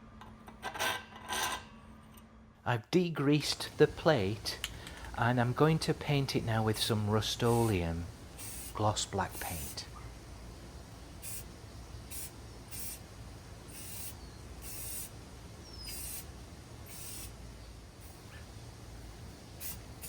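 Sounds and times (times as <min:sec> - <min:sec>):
aerosol spray paint hissing: 0:04.6 - 0:20.0.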